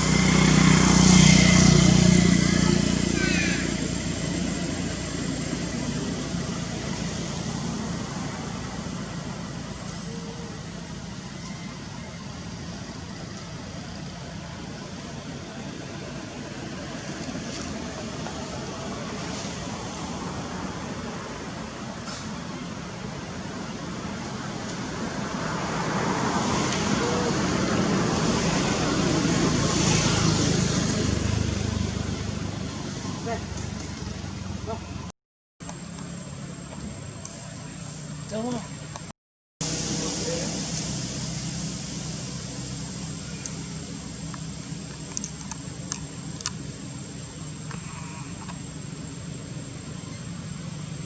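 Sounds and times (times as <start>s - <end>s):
vehicle approaching rushing: 0.0s - 11.2s, 23.1s - 35.1s
vehicle engine: 0.0s - 51.0s.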